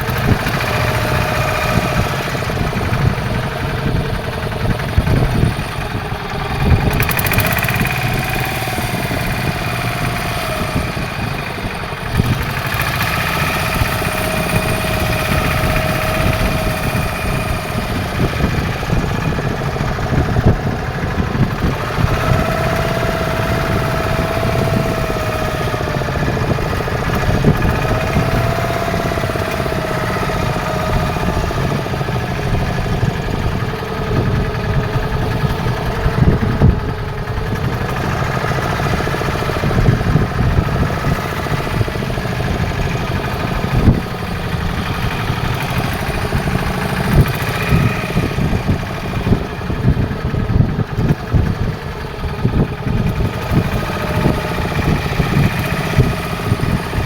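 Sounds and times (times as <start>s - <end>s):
boat engine droning: 0.0s - 57.0s.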